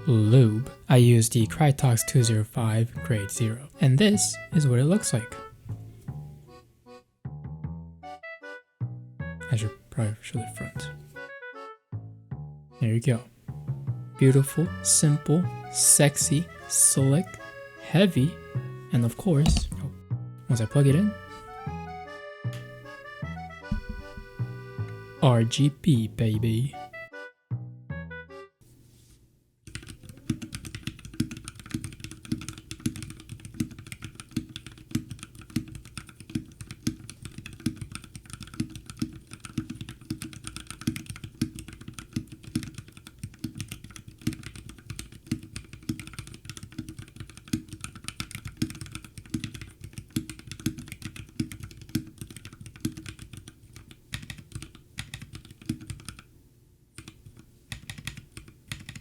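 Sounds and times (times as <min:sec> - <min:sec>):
mechanical keyboard typing: 0:19.4 - 0:19.9, 0:29.7 - 0:56.3, 0:57.0 - 0:59.0.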